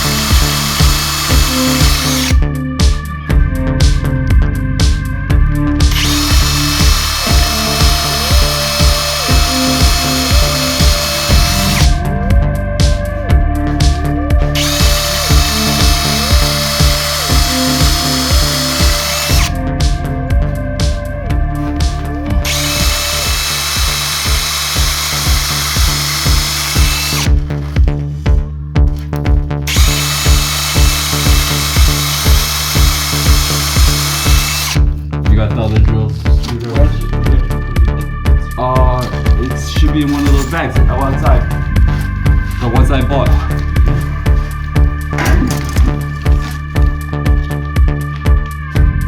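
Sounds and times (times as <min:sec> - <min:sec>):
power drill: 0:00.0 - 0:02.4, 0:05.9 - 0:12.0, 0:14.6 - 0:19.6, 0:22.4 - 0:27.4, 0:29.7 - 0:34.8
electronic music: 0:00.0 - 0:24.0, 0:36.4 - 0:49.0.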